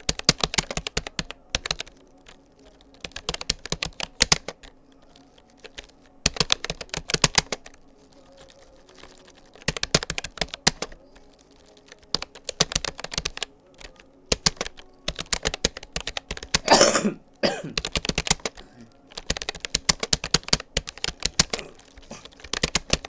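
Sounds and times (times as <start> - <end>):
keyboard typing: 0.0 - 23.0.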